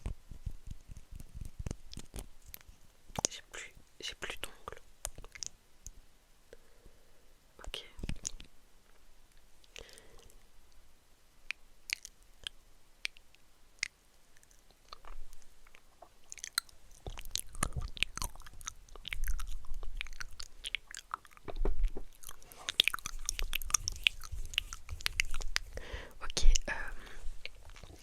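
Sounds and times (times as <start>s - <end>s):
wet mouth clicks and smacks: 0.0s - 3.4s, 5.0s - 5.6s, 7.8s - 8.5s, 11.5s - 21.4s, 22.1s - 25.8s, 27.4s - 28.0s.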